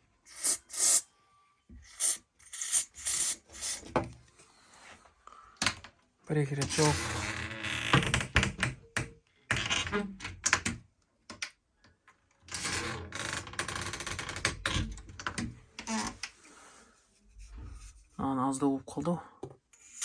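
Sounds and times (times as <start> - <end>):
door hinges creaking: 6.6 - 8.8.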